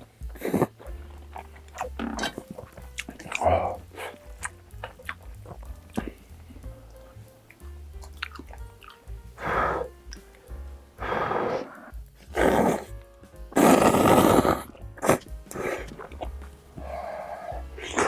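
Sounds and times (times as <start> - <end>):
slurping noodles: 0.0 - 6.3, 11.0 - 13.0, 13.6 - 18.0
soft background music: 0.0 - 18.0.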